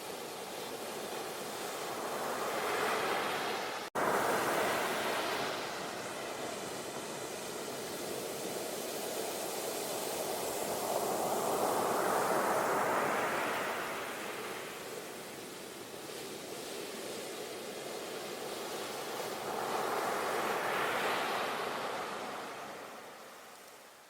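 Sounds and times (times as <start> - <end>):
ocean waves surf hiss: 0.0 - 24.0.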